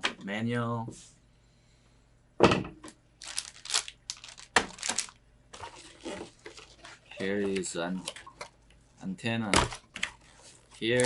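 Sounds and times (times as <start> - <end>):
packaging crinkling and rustling: 3.2 - 8.2, 9.7 - 11.0.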